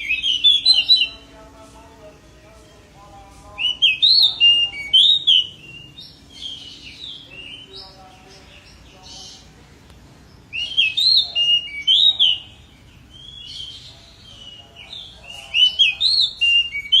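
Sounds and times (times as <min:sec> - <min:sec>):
bird singing whistled phrases: 0:00.0 - 0:01.3, 0:03.6 - 0:08.0, 0:10.5 - 0:17.0.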